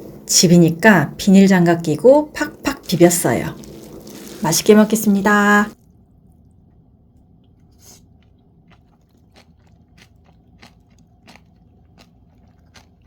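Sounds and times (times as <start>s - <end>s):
person chewing crunchy food: 3.6s - 4.4s, 7.5s - 13.0s.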